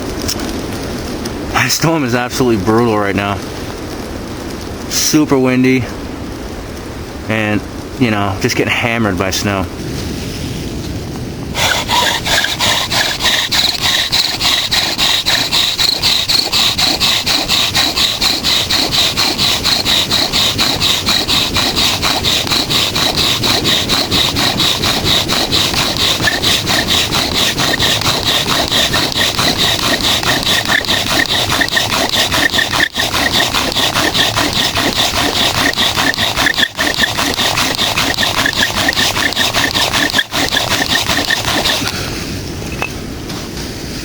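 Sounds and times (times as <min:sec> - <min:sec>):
hand saw cutting log: 0:11.6 - 0:42.0.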